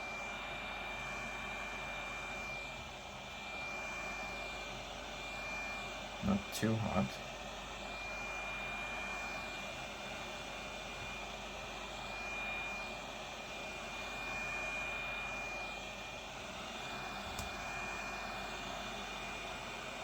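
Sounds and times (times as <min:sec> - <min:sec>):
hot air blower hissing: 0:00.0 - 0:20.0
small click: 0:17.3 - 0:17.5.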